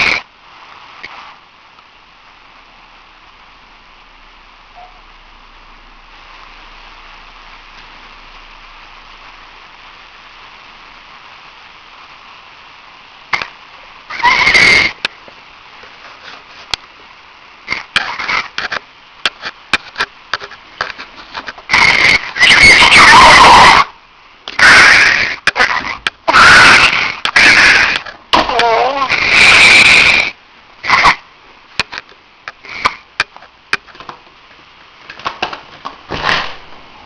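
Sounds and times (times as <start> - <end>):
phone line hiss: 4.7 - 5.2.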